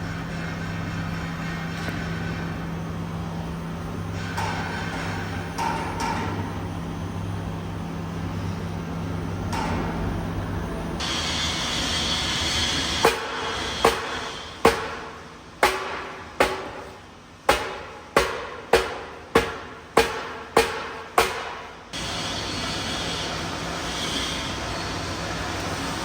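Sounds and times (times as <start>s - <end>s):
hammer striking metal tank: 13.0s - 21.8s.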